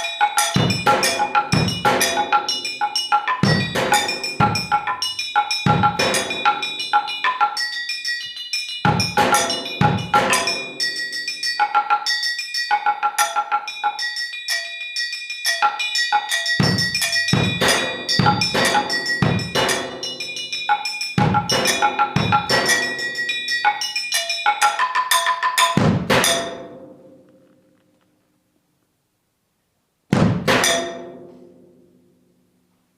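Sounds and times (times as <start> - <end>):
strikes on ringing metal: 16.6 - 20.3, 26.2 - 27.2, 30.5 - 31.9.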